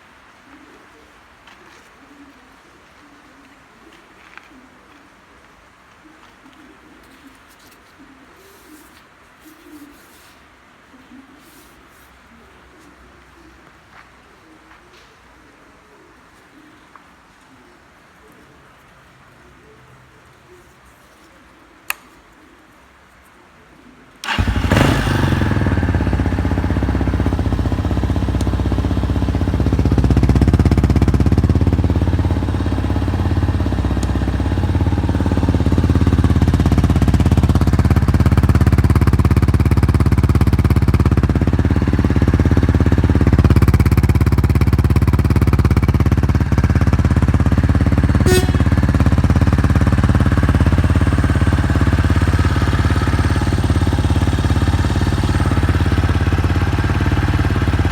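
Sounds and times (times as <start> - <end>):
motorcycle engine idling: 24.2 - 57.9.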